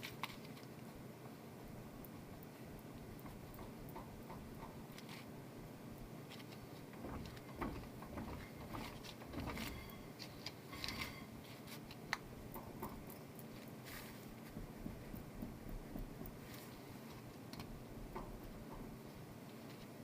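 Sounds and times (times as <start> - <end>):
mechanism knocking and clicking: 2.8 - 11.3, 11.9 - 16.5, 17.1 - 19.1.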